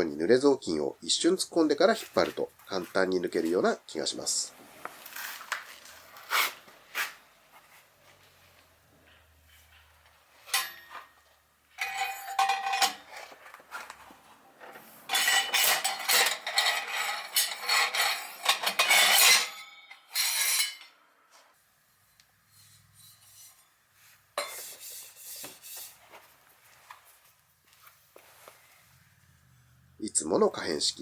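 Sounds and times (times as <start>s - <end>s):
metal scraping and clinking: 9.0s - 14.0s, 14.6s - 21.0s, 22.0s - 23.8s, 24.4s - 26.1s.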